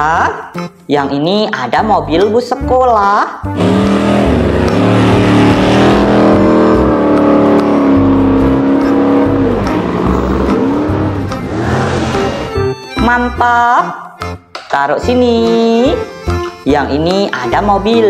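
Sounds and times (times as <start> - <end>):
car engine revving: 3.6 - 12.8.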